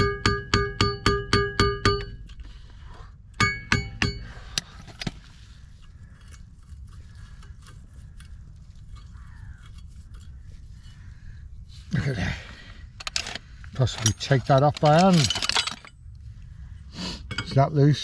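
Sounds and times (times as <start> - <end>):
hammer striking metal: 0.0 - 2.2, 3.4 - 4.3
tools tapping and clinking: 0.0 - 2.5, 3.3 - 5.2, 13.0 - 16.0, 17.3 - 17.7.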